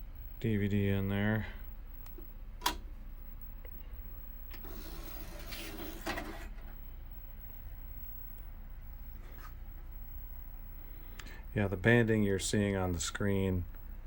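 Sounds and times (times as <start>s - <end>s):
steady low hum: 0.0s - 14.0s
disc tray motor whirring: 4.6s - 6.8s.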